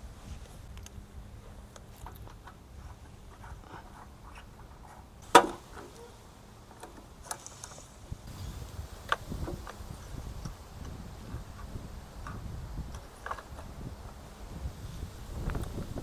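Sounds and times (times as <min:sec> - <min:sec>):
clicks and taps on lawn mower: 0:05.2 - 0:08.0, 0:09.0 - 0:14.2.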